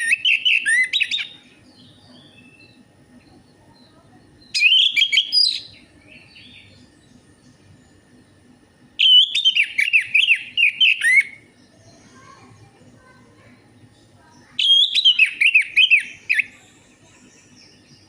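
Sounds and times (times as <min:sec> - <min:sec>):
thrush singing whistled notes: 0:00.0 - 0:01.4, 0:04.5 - 0:06.7, 0:09.0 - 0:11.5, 0:14.6 - 0:18.0.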